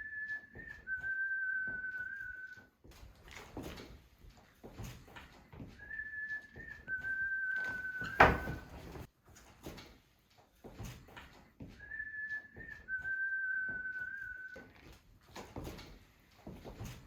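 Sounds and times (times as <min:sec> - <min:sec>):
two-note whistled tone: 0:05.8 - 0:08.7, 0:11.8 - 0:14.6.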